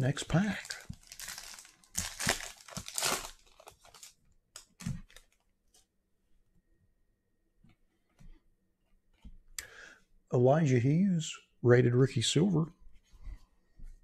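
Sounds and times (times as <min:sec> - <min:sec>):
card pack wrapper tearing: 0:00.4 - 0:05.2.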